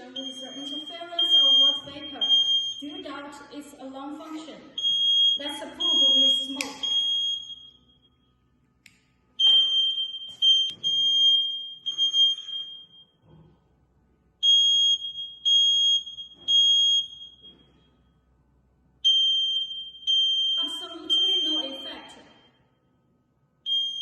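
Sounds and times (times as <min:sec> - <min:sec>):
smoke alarm beeping: 0:00.0 - 0:03.2, 0:04.8 - 0:08.6, 0:09.4 - 0:13.2, 0:14.4 - 0:18.0, 0:19.0 - 0:22.8, 0:23.6 - 0:24.0.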